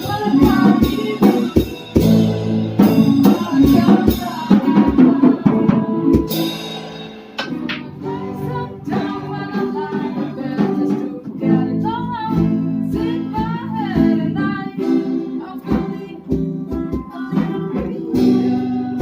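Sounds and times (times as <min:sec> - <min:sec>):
person singing: 0:00.0 - 0:06.7, 0:07.4 - 0:19.0
acoustic guitar strumming: 0:00.0 - 0:19.0.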